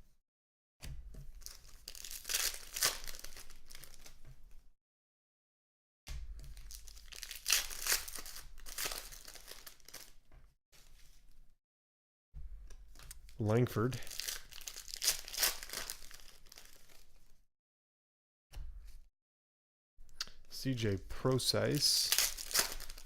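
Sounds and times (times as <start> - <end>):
wrappers tearing and crinkling: 1.3 - 4.2, 6.5 - 10.2, 13.0 - 17.2, 21.7 - 23.0
cards being handled: 21.7 - 23.0.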